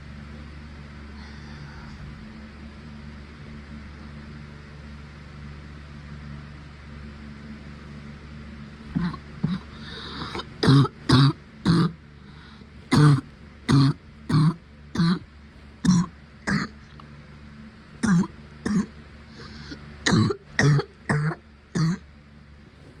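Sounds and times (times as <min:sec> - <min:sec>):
woman coughing harshly: 0:08.9 - 0:12.0, 0:12.9 - 0:15.2, 0:15.8 - 0:16.8, 0:18.0 - 0:18.9, 0:20.0 - 0:22.0.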